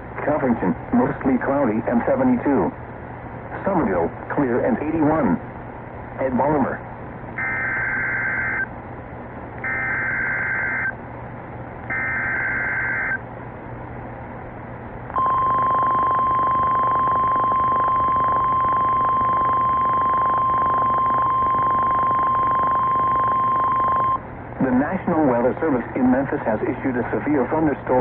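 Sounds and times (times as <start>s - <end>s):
steady alarm tone: 7.4s - 8.7s, 9.6s - 11.0s, 11.9s - 13.2s, 15.2s - 24.2s
warbling data bursts: 9.6s - 10.9s, 11.9s - 13.2s.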